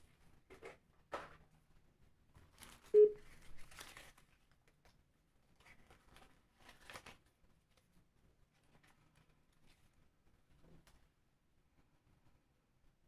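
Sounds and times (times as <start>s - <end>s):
crinkling and handling noises: 0.0s - 12.5s
short loud beep: 3.0s - 3.2s.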